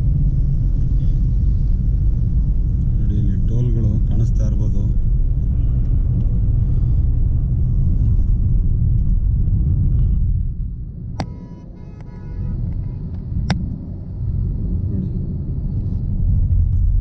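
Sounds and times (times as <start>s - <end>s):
vehicle rumble on road: 0.0s - 17.0s
wind noise on microphone: 4.9s - 17.0s
brief pitched buzzing tone: 11.2s - 13.0s.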